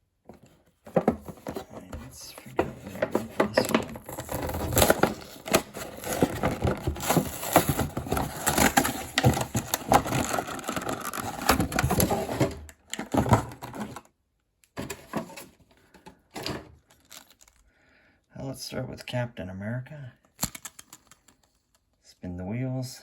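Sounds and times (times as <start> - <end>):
toy packaging being opened: 0.8 - 14.1, 16.4 - 17.7, 20.3 - 21.9.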